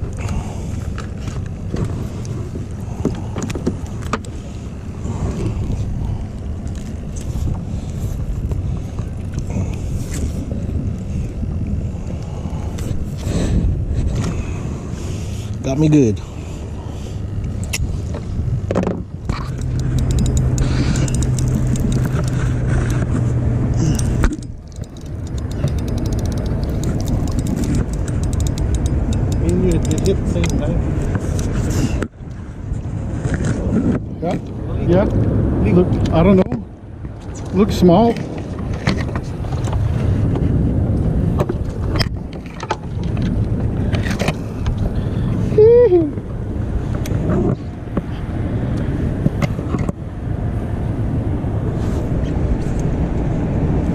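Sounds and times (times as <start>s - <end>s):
boat motor running: 0.0s - 51.7s
wind noise: 0.0s - 53.9s
fast small clicks: 19.3s - 23.2s, 23.9s - 30.6s.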